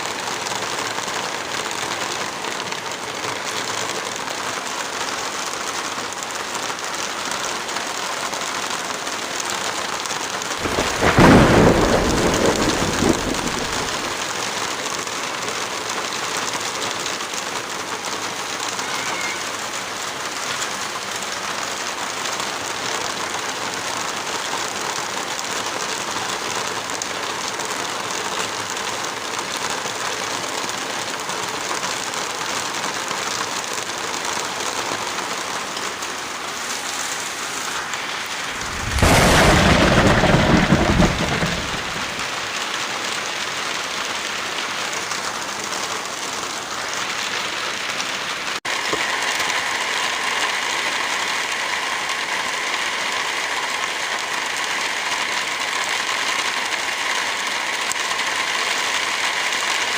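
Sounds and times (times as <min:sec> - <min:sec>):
heavy rain hissing: 0:00.0 - 0:59.9
loud low rumble: 0:38.2 - 0:42.3.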